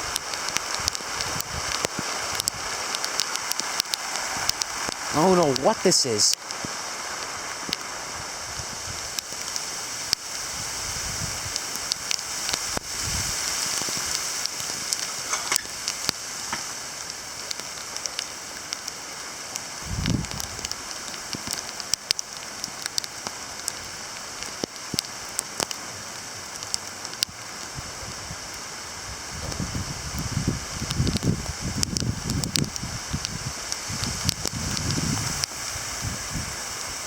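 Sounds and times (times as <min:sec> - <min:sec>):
rain and ice pellets falling: 0:00.0 - 0:37.0
ice pellets ticking on surfaces: 0:00.1 - 0:07.9, 0:11.5 - 0:25.8, 0:26.4 - 0:27.7, 0:30.9 - 0:35.6.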